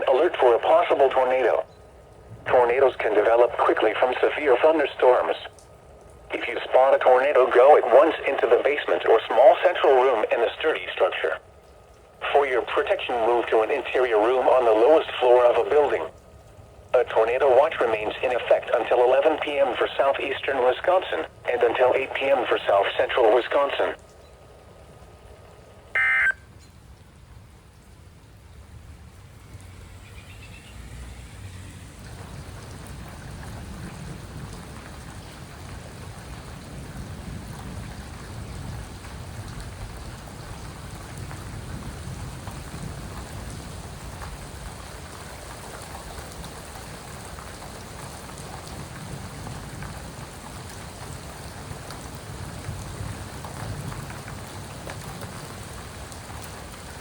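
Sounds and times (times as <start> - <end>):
steady heavy rain: 0.0 - 57.0
loud electronic tone: 26.0 - 26.4
low thunder rumble: 31.1 - 45.3.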